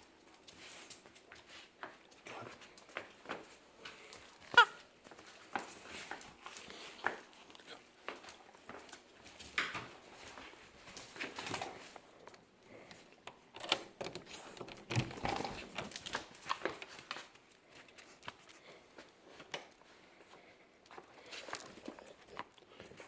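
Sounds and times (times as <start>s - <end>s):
dog whining: 4.4s - 4.9s.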